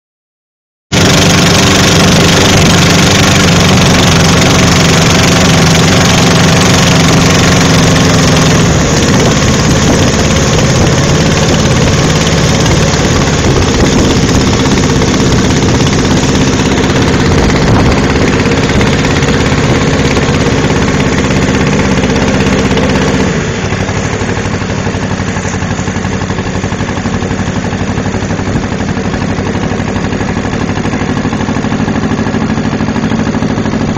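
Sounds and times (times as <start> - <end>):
motorboat engine running: 0.9 - 33.9.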